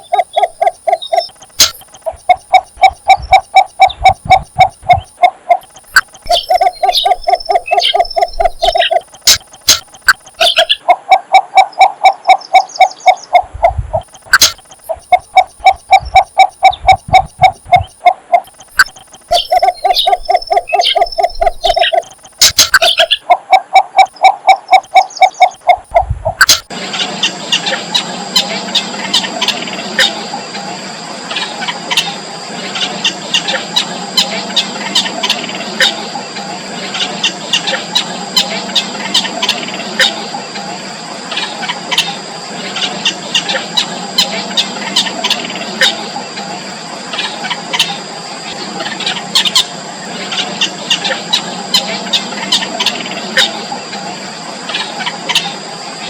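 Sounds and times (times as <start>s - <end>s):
steady high tone: 0.0s - 10.6s, 12.8s - 23.2s
nestling birds cheeping: 0.0s - 56.0s.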